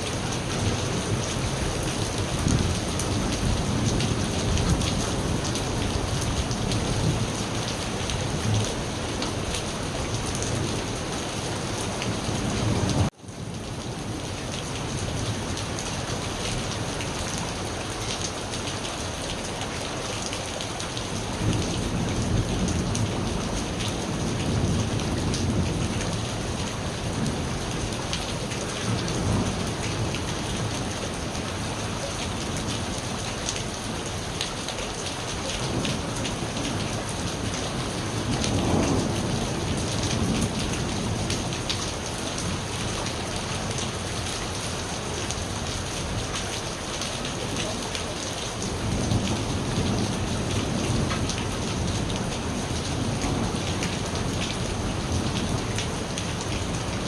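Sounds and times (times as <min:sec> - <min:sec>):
heavy rain pattering: 0:00.0 - 0:57.0
rolling thunder: 0:35.6 - 0:41.6.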